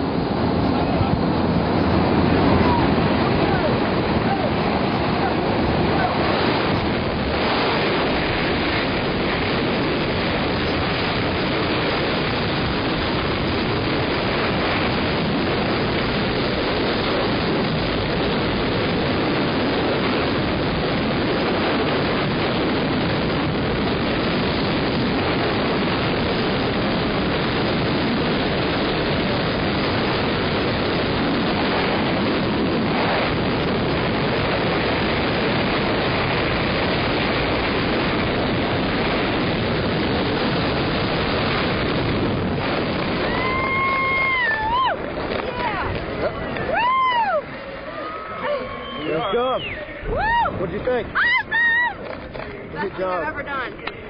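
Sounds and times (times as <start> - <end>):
wind buffeting microphone: 0.0 - 54.0.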